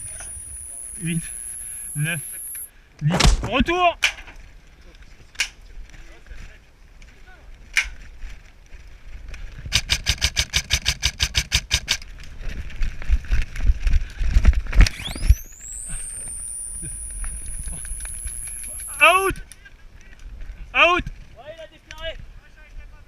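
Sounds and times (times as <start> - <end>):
high rising tone: 0.0 - 2.7, 14.9 - 19.3
airsoft gunfire: 9.7 - 12.0.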